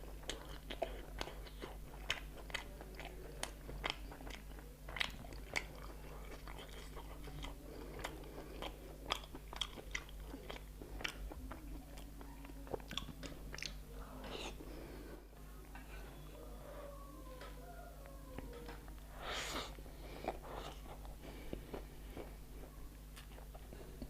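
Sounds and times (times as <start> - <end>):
person chewing food: 0.0 - 16.3, 17.4 - 24.0.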